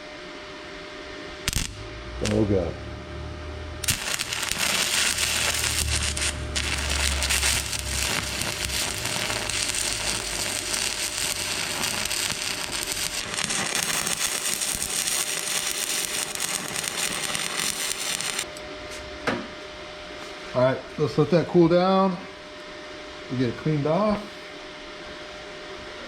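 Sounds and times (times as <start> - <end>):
welding machine hum: 1.3 - 18.6
welding arc crackle: 1.4 - 2.6, 3.8 - 18.6.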